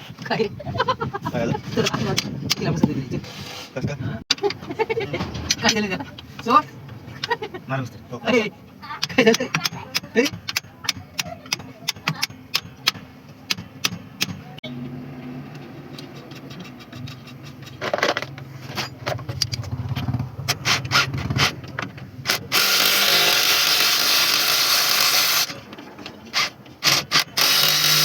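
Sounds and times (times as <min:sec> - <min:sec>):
metal knocks and taps: 0:04.3 - 0:07.5
tool rushing noise: 0:22.3 - 0:25.6, 0:26.3 - 0:28.0.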